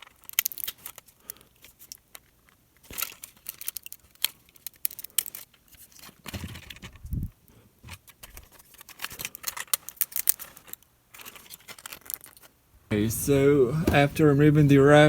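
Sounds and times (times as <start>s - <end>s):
soft handling knocks: 12.9s - 14.9s.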